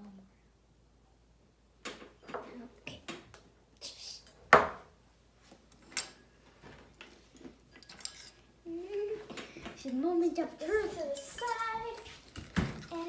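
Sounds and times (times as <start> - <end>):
objects knocking and clattering: 4.5 - 4.9, 10.6 - 13.0.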